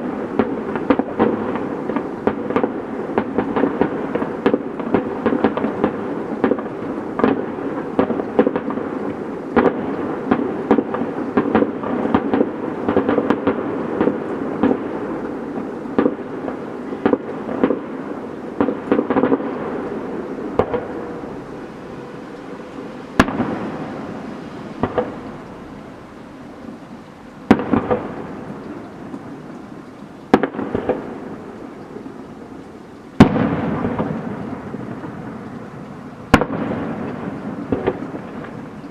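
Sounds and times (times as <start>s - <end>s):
fireworks bangs and crackling: 0.0s - 38.9s
continuous rumble: 19.5s - 30.1s.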